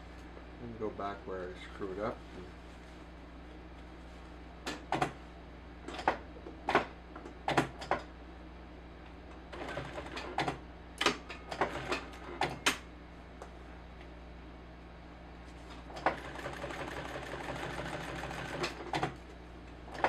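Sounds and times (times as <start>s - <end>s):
sewing machine stitching: 16.0s - 19.2s.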